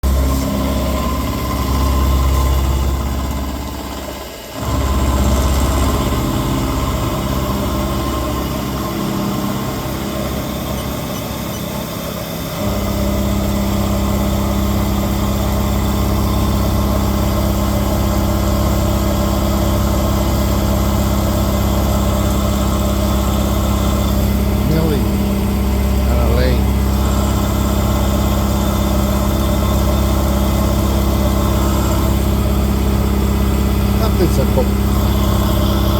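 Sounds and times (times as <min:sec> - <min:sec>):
lathe running: 0:00.0 - 0:35.9.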